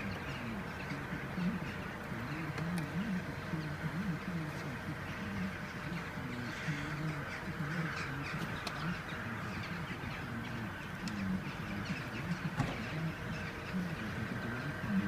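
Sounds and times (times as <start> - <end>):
crows cawing: 4.9 - 14.9.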